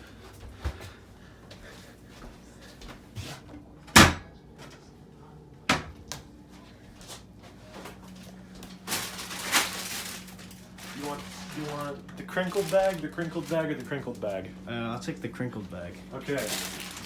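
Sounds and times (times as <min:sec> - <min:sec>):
loud kitchen bangs: 0:03.9 - 0:04.3.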